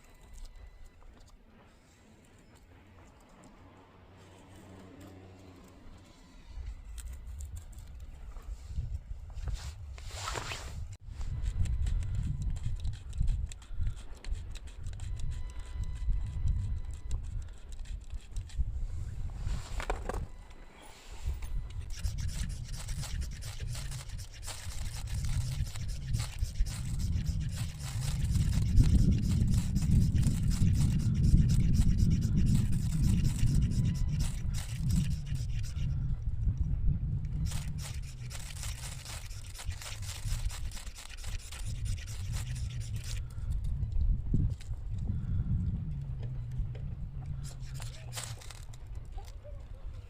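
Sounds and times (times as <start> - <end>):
rustling and rubbing: 6.8 - 11.6, 17.9 - 35.9, 37.4 - 43.3, 47.4 - 49.4
steady low rumble: 10.8 - 49.2
rapid scraping strokes: 20.8 - 36.0, 37.4 - 43.4, 47.4 - 48.8.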